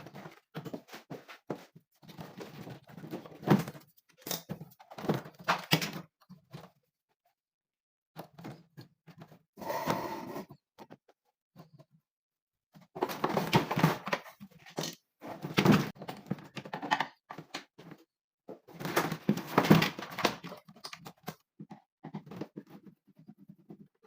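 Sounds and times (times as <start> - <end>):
rustling and clattering: 0.0 - 6.9, 12.7 - 24.0.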